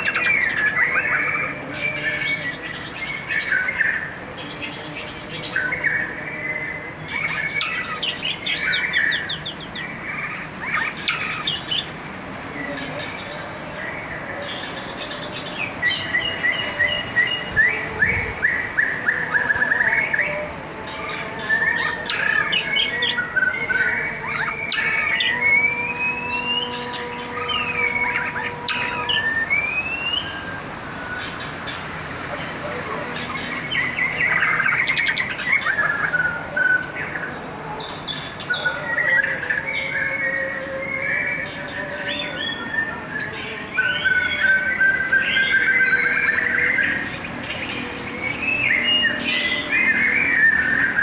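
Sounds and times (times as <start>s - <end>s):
songbird singing: 0.0s - 51.0s.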